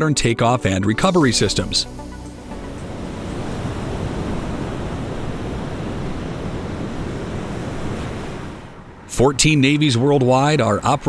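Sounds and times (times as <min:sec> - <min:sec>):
sea waves: 0:01.1 - 0:11.0
wind: 0:02.3 - 0:11.0.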